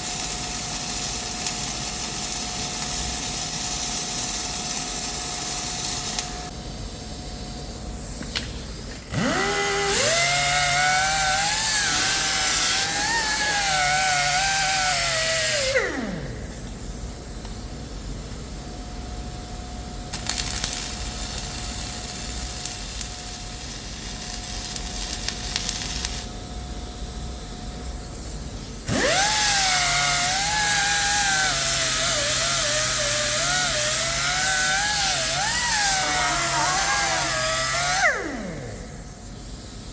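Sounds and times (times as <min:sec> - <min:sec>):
electric power tool spinning: 0:09.0 - 0:16.8, 0:28.8 - 0:39.2.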